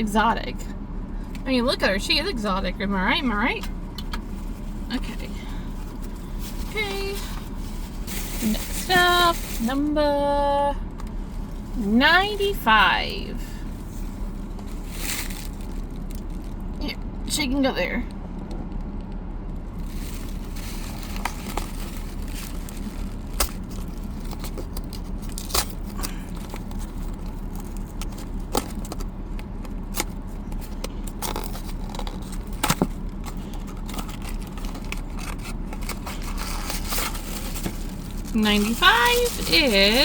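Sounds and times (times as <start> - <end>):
low hum: 0.0 - 40.0
packaging crackling and clicking: 19.8 - 40.0.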